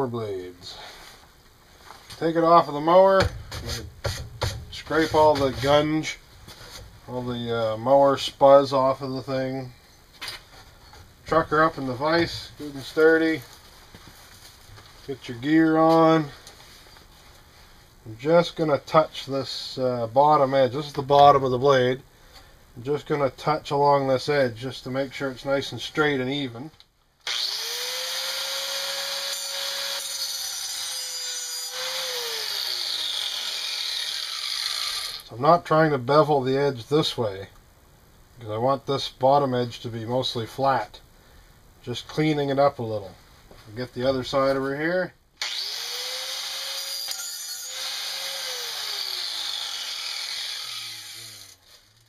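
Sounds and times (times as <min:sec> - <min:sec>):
angle grinder grinding steel: 0:27.3 - 0:35.2, 0:45.4 - 0:51.6.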